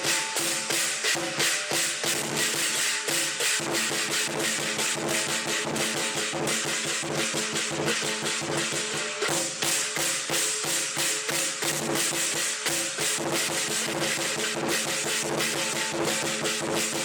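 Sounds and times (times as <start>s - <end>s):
big drum beaten rapidly: 0.0s - 17.0s
clashing cymbals: 0.0s - 17.0s
ringing gong: 13.7s - 17.0s.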